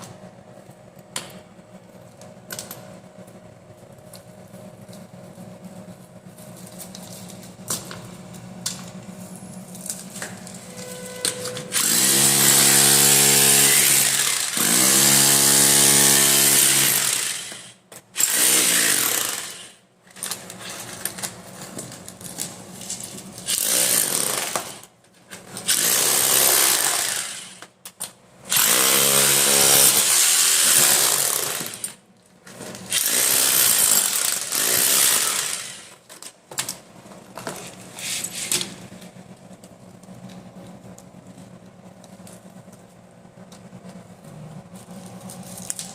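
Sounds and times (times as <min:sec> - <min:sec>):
hammer drill bursts: 0:11.7 - 0:19.8, 0:25.7 - 0:27.6, 0:28.5 - 0:31.9, 0:32.9 - 0:35.9.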